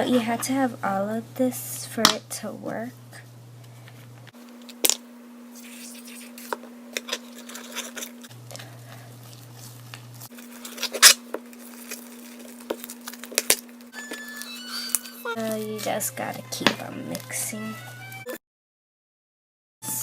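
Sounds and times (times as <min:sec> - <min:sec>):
slime crackling and squishing: 0:04.7 - 0:08.3, 0:09.6 - 0:16.0.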